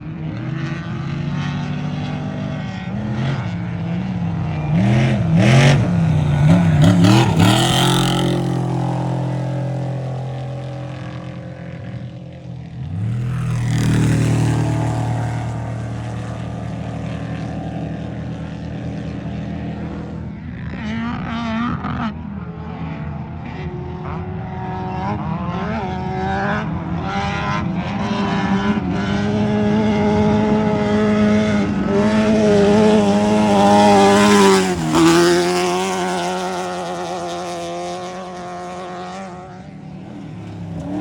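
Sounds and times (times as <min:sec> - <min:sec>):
truck engines revving: 0:00.0 - 0:21.8, 0:26.0 - 0:41.0
loud truck engine: 0:00.5 - 0:21.0, 0:31.3 - 0:41.0.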